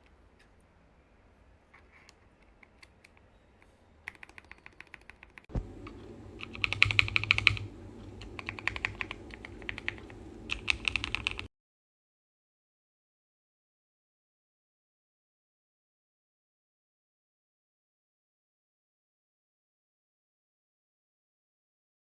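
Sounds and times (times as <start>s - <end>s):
mechanical keyboard typing: 4.1s - 11.5s.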